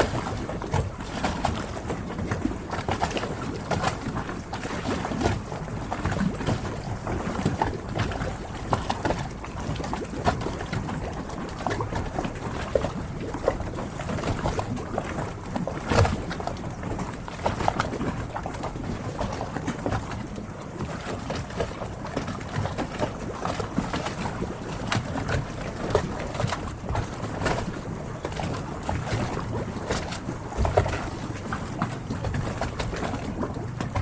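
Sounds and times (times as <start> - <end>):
water lapping against boat hulls: 0.0 - 34.0.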